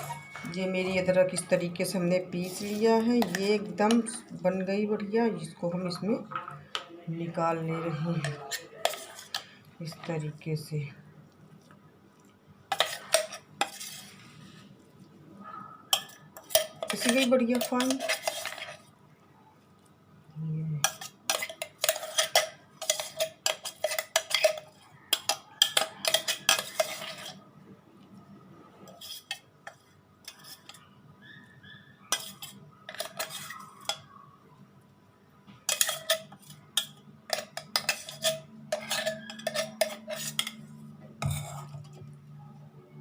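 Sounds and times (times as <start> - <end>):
utensil scraping a grinder jar: 2.4 - 3.6, 8.0 - 10.1, 12.7 - 14.3, 15.9 - 18.9, 20.8 - 27.4, 28.9 - 30.9, 32.1 - 34.0, 35.7 - 40.6.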